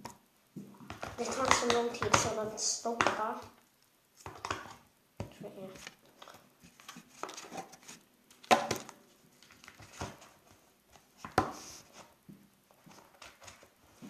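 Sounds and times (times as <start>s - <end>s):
packaging rustling: 5.7s - 11.1s.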